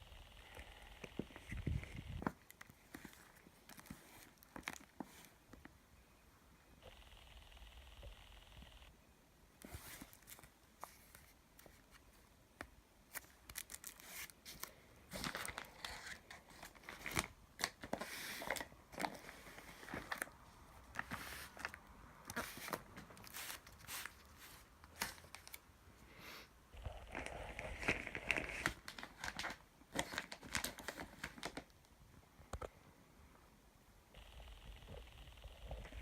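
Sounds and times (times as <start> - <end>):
packaging crinkling and tearing: 2.2 - 5.3, 13.1 - 25.6, 27.1 - 31.7.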